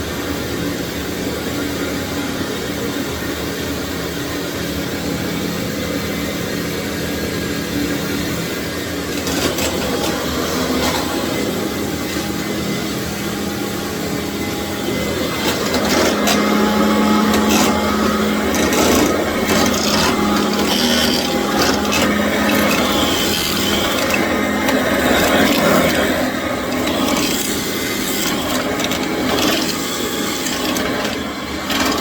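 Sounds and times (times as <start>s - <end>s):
vacuum cleaner motor hum: 0.0s - 32.0s
floor tool scraping on tile: 9.1s - 11.5s, 15.0s - 32.0s.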